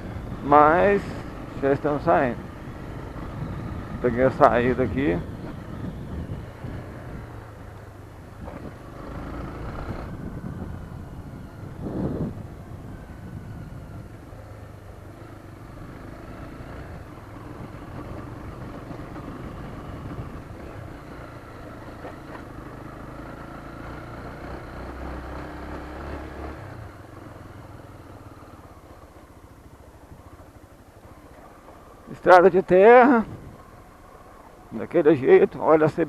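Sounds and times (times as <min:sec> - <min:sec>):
wind rushing over microphone: 0:00.0 - 0:14.3, 0:15.8 - 0:21.5, 0:32.2 - 0:33.8
motorcycle engine riding: 0:00.0 - 0:36.0.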